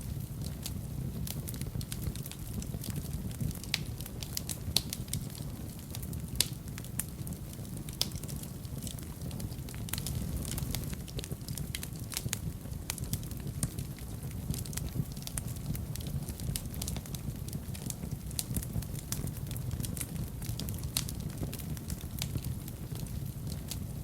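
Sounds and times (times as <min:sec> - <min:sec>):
fire crackling and popping: 0:00.0 - 0:24.0
low fire rumble: 0:00.0 - 0:24.0.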